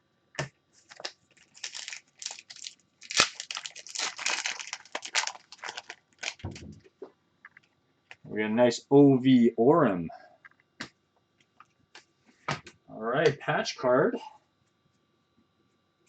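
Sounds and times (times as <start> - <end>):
plastic and foil packaging crinkling: 0.8 - 6.9.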